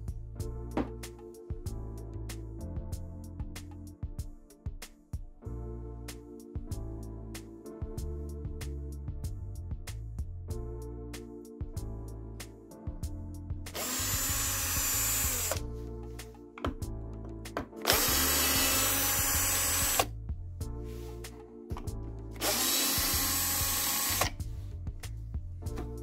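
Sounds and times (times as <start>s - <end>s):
background music with bass line: 0.0s - 26.0s
power drill running: 13.8s - 15.6s, 17.9s - 20.1s, 22.4s - 24.4s.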